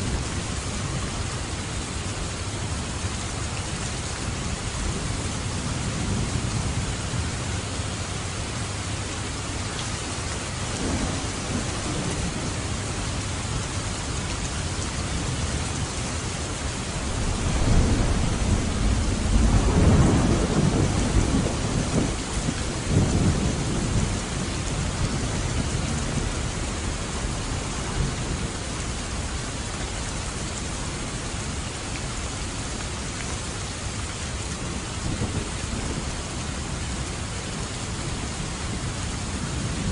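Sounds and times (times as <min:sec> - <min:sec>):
heavy rain: 0:00.0 - 0:39.9
thunder rumbling: 0:10.4 - 0:29.3, 0:34.5 - 0:37.3, 0:37.9 - 0:39.9.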